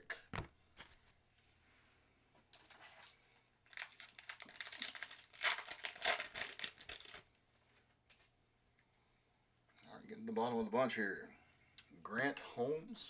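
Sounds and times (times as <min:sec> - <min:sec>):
foil wrapper crinkling: 0:02.5 - 0:07.3.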